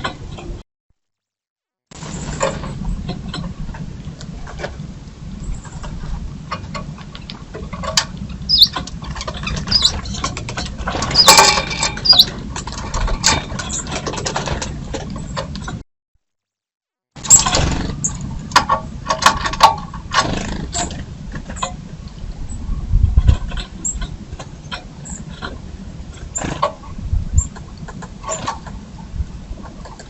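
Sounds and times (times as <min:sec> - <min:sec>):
low steady rumble: 0:02.0 - 0:15.8, 0:17.2 - 0:30.0
birds pecking and scratching: 0:05.6 - 0:15.8, 0:17.2 - 0:21.8, 0:23.2 - 0:28.8
short high bird chirps: 0:08.5 - 0:08.7, 0:09.7 - 0:10.0, 0:12.0 - 0:12.3.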